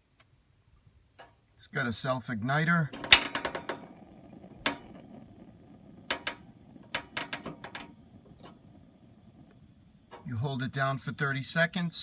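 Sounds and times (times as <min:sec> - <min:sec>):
piezo igniter clicks: 0:02.9 - 0:10.5.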